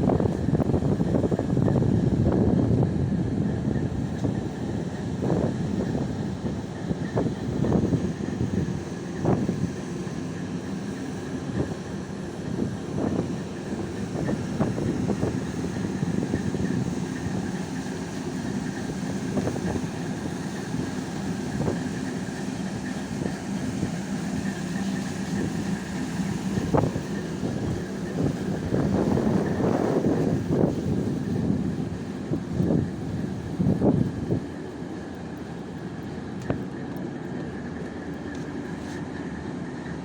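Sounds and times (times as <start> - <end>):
wind buffeting microphone: 0.0 - 38.8
tugboat engines rumbling: 0.0 - 40.0.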